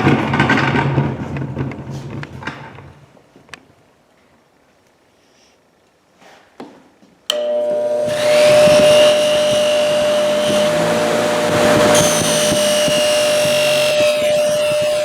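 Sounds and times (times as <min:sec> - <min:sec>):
bench buffer motor humming: 0:07.4 - 0:15.0
buffing wheel hissing on metal: 0:08.1 - 0:15.0.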